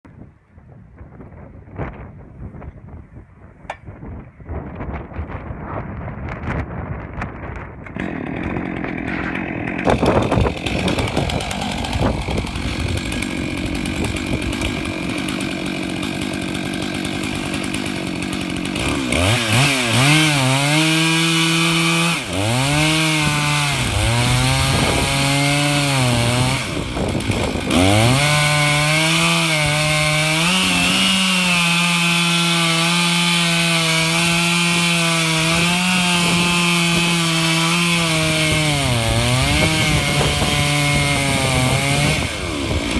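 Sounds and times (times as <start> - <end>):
chainsaw cutting wood: 7.7 - 42.9.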